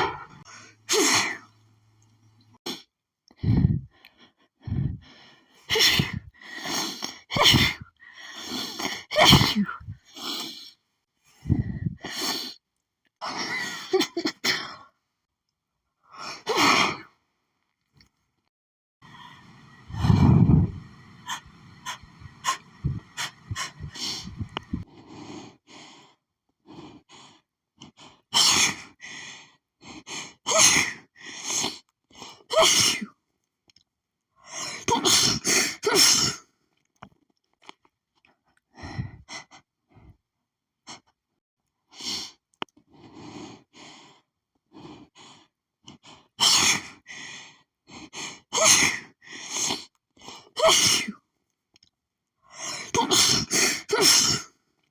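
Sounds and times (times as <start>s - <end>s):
sniffs and breaths: 2.6s - 9.1s, 9.8s - 12.6s, 19.0s - 32.5s, 41.8s - 50.6s
woman sneezing: 9.1s - 9.8s.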